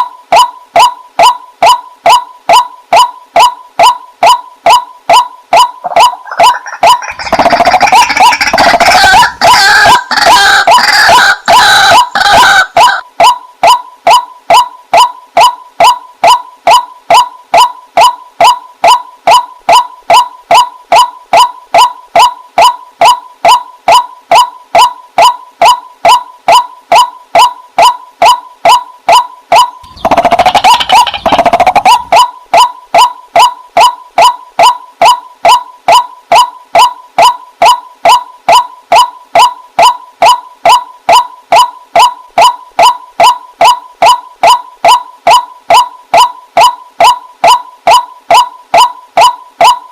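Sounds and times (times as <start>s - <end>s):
bird calling: 0.0s - 15.1s, 29.6s - 33.6s.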